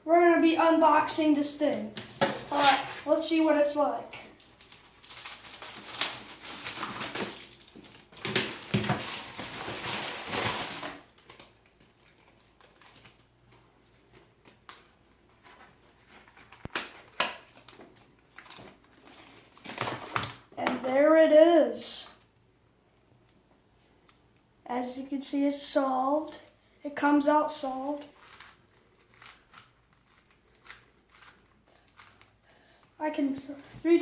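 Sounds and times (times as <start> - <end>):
packaging crinkling and tearing: 4.3 - 20.5, 28.0 - 32.4.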